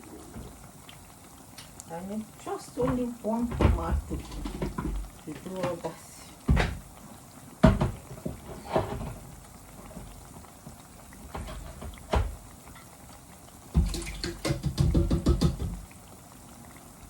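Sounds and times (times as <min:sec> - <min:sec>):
kitchen knocks: 0:07.6 - 0:08.0, 0:13.8 - 0:15.8.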